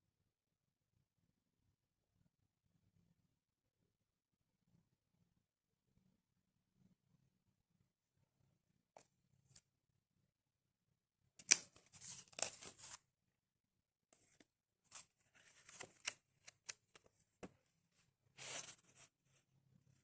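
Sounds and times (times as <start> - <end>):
paper and cardboard rustling: 11.4 - 13.0, 14.2 - 17.1, 18.4 - 19.1.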